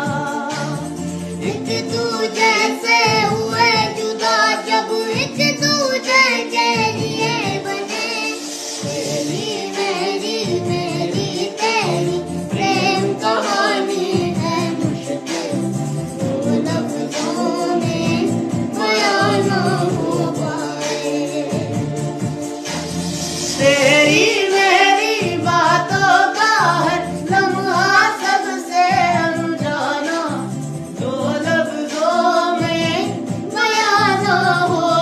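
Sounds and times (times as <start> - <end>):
instrumental accompaniment: 0.0 - 35.0.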